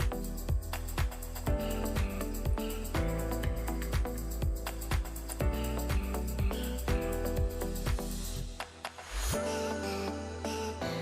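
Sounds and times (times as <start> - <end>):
kick drum: 0.0 - 8.7
electronic beat music: 0.0 - 11.0.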